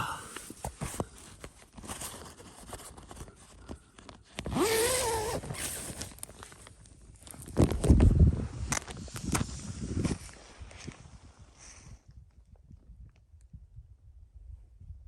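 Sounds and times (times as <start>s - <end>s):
tent zip pulled open: 4.4s - 6.6s.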